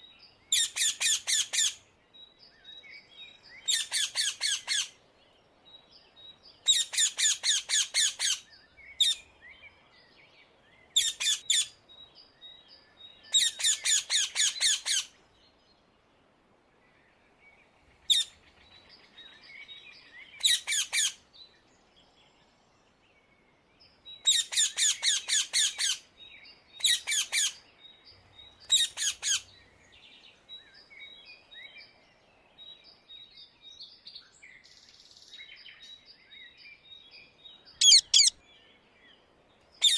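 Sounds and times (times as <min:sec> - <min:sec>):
parakeet shrill calls: 0:13.4 - 0:15.1, 0:37.8 - 0:38.4
small birds chirping: 0:32.7 - 0:38.4.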